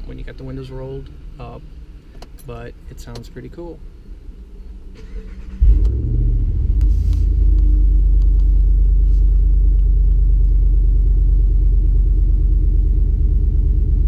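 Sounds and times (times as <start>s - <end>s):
deep truck exhaust drone: 3.8s - 14.0s.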